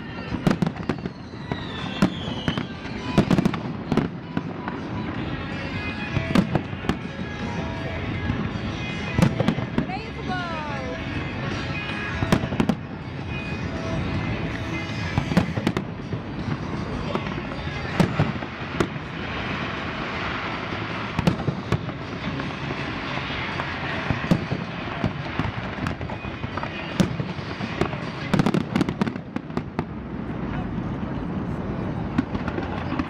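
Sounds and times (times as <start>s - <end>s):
firecrackers sharp bangs: 0.0s - 30.8s, 31.9s - 33.0s
distant firework bangs: 14.5s - 30.0s.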